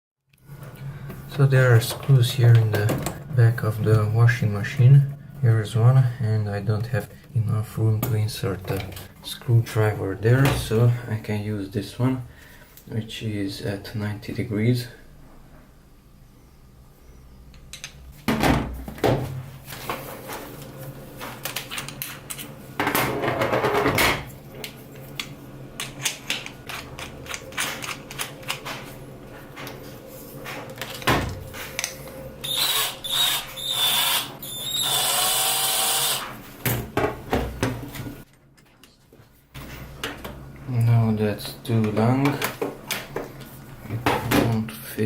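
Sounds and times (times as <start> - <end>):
cordless drill running: 32.4 - 36.3.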